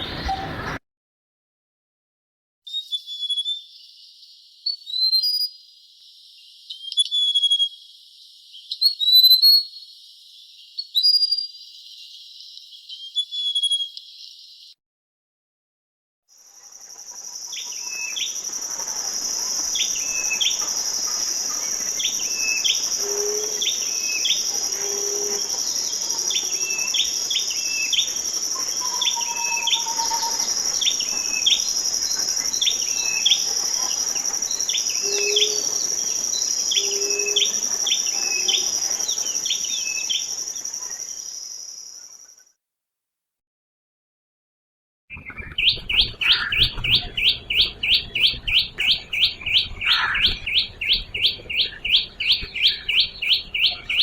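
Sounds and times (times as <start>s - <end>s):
bird chirping: 0.0s - 0.8s, 2.7s - 14.8s, 16.5s - 42.4s, 45.1s - 54.0s
high-pitched insect drone: 16.4s - 42.2s.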